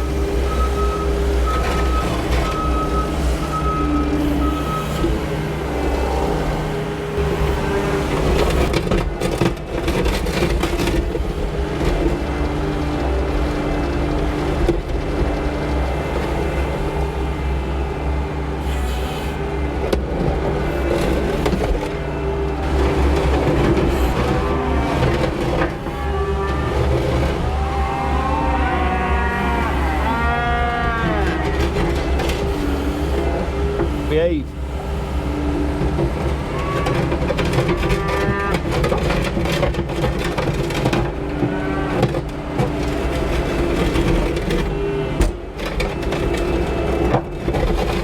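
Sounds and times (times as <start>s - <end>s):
skid steer engine running: 0.0s - 48.0s
cattle mooing: 23.8s - 33.6s, 37.6s - 38.7s.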